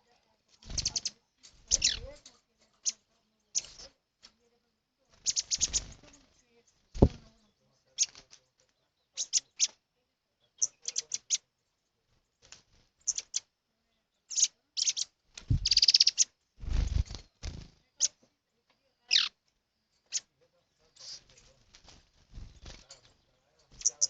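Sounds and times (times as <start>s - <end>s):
birds chirping and trilling: 0.0s - 24.0s
low thumps: 7.0s - 7.4s, 15.4s - 15.8s.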